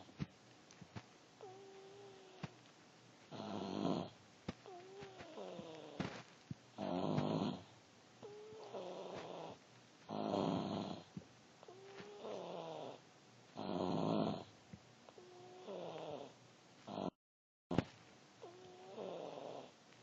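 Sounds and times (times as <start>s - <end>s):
person snoring: 3.3s - 6.2s, 6.8s - 11.1s, 11.8s - 13.0s, 13.6s - 14.5s, 15.2s - 16.3s, 16.9s - 17.1s, 18.4s - 19.7s.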